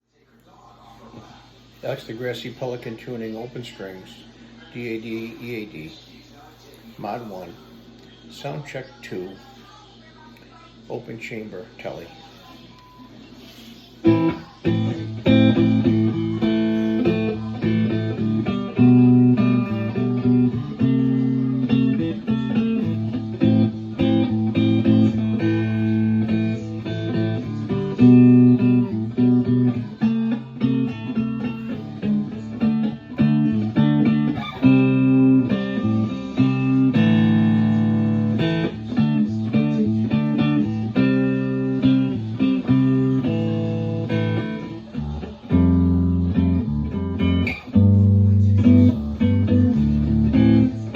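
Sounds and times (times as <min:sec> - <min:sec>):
electric guitar notes and chords: 0:14.0 - 0:50.9.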